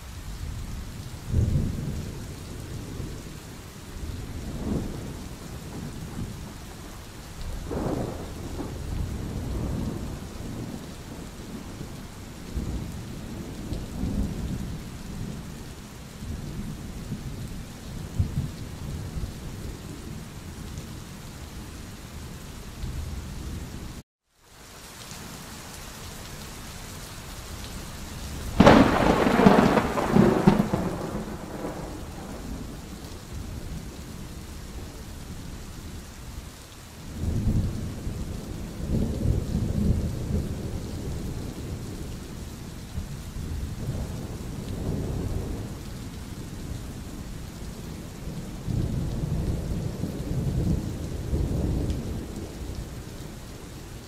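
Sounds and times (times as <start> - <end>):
steady rain: 0.0 - 54.0
low rolling thunder: 1.2 - 3.3, 3.9 - 20.8, 28.5 - 35.5, 37.1 - 54.0
loud thunderclap: 28.6 - 32.7.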